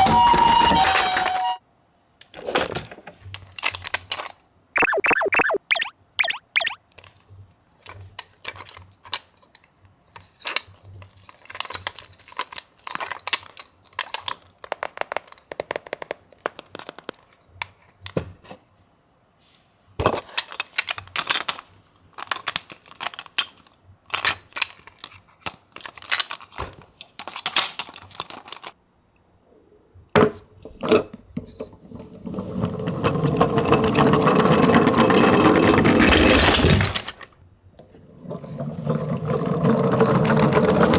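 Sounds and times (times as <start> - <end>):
toy rolling down a slope: 32.0 - 37.2, 38.1 - 40.9.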